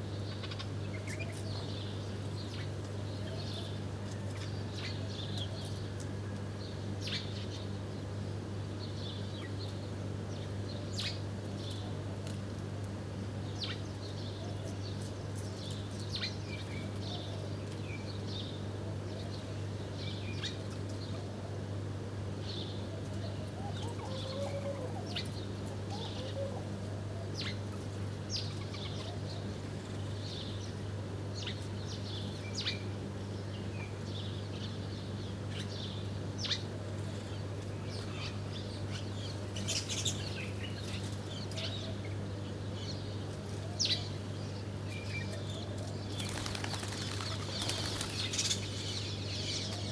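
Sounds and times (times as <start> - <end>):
small birds chirping: 33.4 - 49.9
wings flapping: 46.1 - 48.7.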